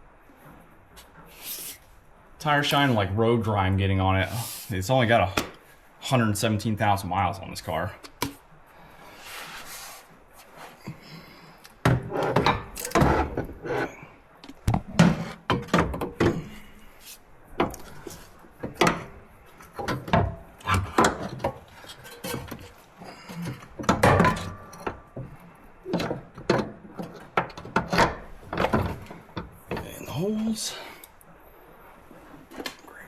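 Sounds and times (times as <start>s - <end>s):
metal tools clanking: 12.1s - 14.0s, 17.7s - 25.1s.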